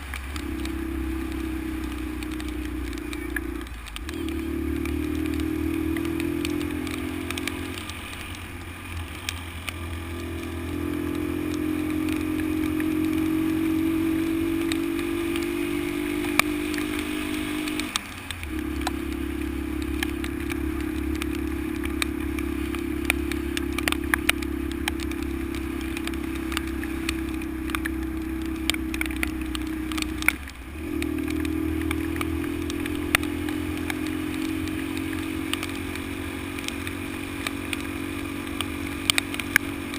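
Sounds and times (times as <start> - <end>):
motorcycle engine running: 0.0 - 39.9
motorcycle clicks and rattles: 14.3 - 39.9.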